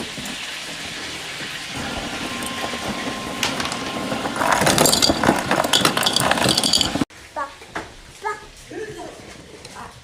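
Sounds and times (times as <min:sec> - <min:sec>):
ice cubes clinking: 0:02.5 - 0:07.1.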